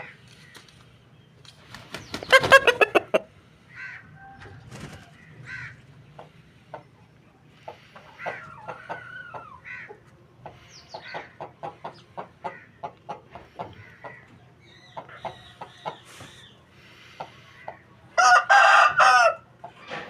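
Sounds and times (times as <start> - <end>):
drawn-out wavering chicken calls: 2.0 - 20.0
fowl clucking: 2.2 - 6.9, 7.6 - 14.4.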